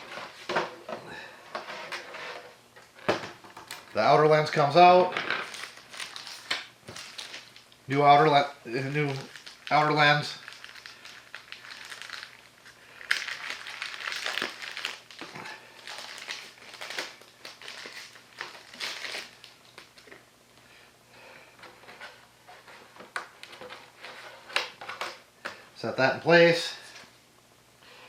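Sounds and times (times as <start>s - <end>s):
plastic packaging crinkling: 5.1s - 7.9s, 8.8s - 20.3s.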